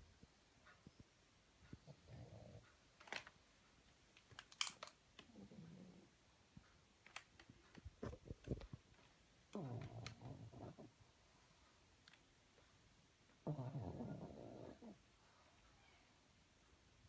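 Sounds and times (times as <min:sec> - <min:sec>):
dog snoring softly: 0:01.8 - 0:02.8, 0:05.3 - 0:06.1, 0:09.5 - 0:11.6, 0:13.4 - 0:15.6.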